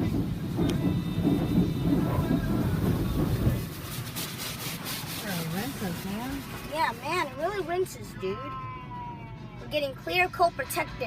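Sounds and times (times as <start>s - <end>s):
car wash spray drumming on car: 0.0s - 8.0s.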